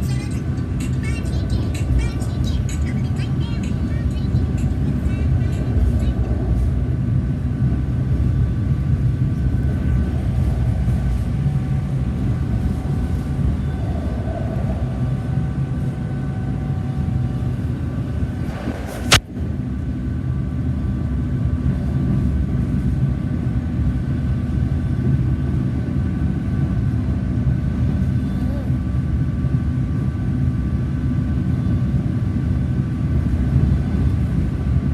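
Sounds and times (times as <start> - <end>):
train rumble from inside car: 0.0 - 34.9
faint whining tones: 8.2 - 19.1.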